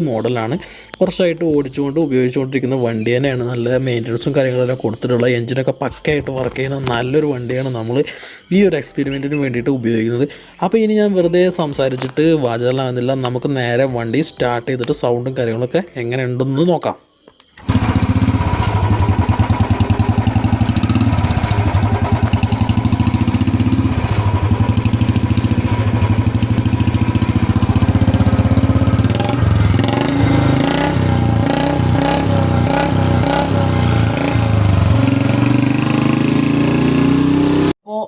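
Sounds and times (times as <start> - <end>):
motorcycle engine idling and revving: 17.6 - 37.8.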